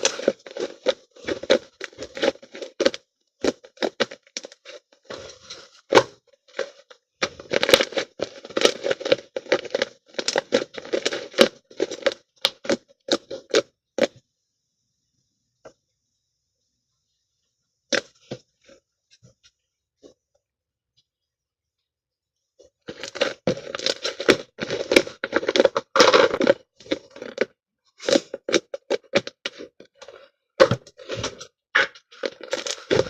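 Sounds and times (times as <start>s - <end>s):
slime squishing and popping: 0.0s - 14.2s, 22.9s - 30.0s, 30.6s - 33.0s.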